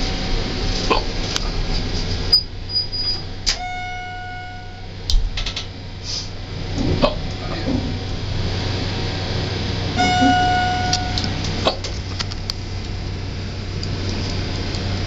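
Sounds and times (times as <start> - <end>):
elevator running noise: 0.0 - 15.0
electronic chime: 3.6 - 4.9, 10.0 - 11.4.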